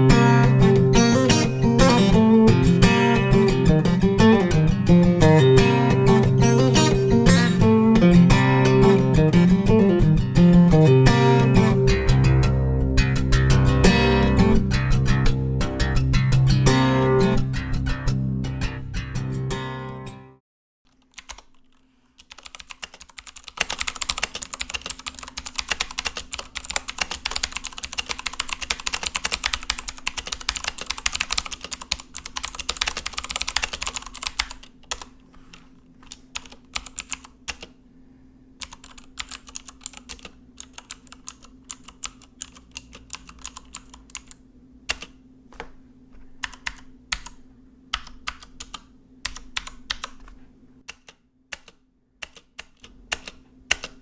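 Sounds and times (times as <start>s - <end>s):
clicky mechanical keyboard typing: 20.9s - 37.7s, 38.6s - 45.2s, 46.4s - 54.0s
faint steady hum: 20.9s - 54.0s.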